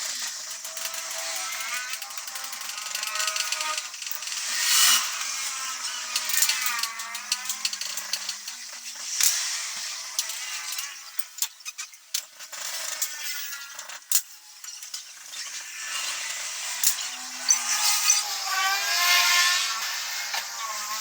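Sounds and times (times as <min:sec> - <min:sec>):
rasping scraping on motor: 0:15.6 - 0:21.0.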